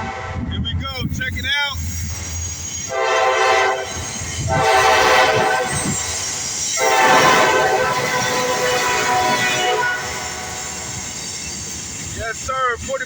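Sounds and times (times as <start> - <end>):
locomotive air horn: 0.0 - 0.6, 2.9 - 11.1
low rumble of moving train: 0.0 - 13.0.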